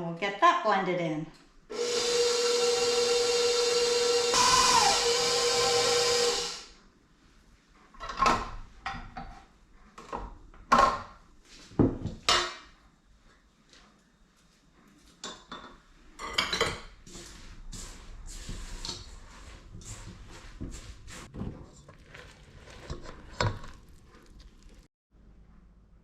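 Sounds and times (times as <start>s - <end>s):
electric mixer running: 1.7s - 6.7s.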